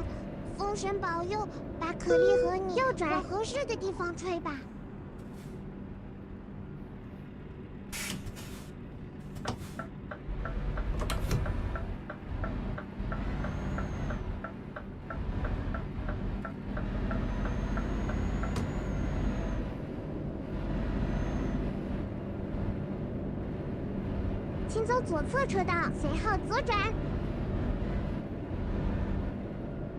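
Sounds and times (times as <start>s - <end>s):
vehicle engine and road rumble: 0.0s - 29.9s
turn signal ticking: 9.8s - 19.4s.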